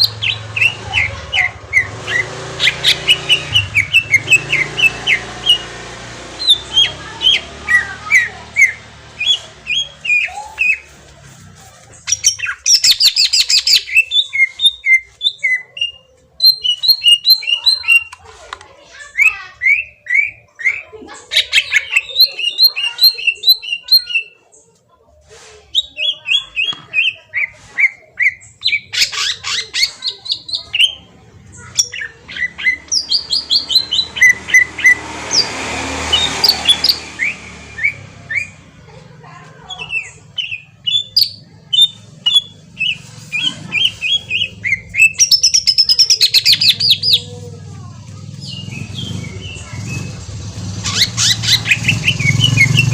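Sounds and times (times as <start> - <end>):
bird singing whistled notes: 39.8 - 47.3.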